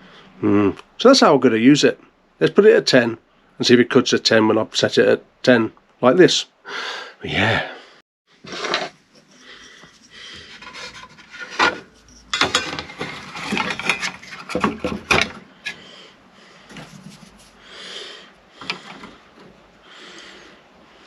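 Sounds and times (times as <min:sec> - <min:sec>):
guide scraping on rail: 0:08.4 - 0:14.6.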